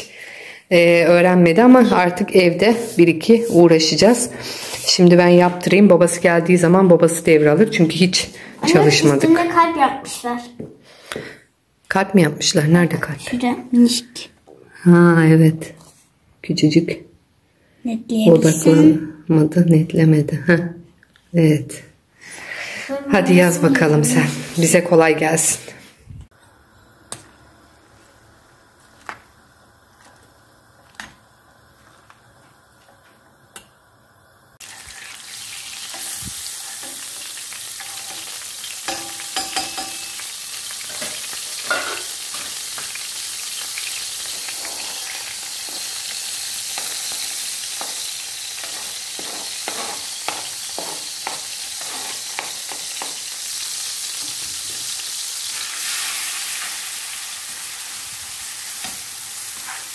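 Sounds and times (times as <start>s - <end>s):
food sizzling in a frying pan: 0.7s - 10.6s, 22.4s - 59.9s
utensil knocking against pan: 38.9s - 40.1s.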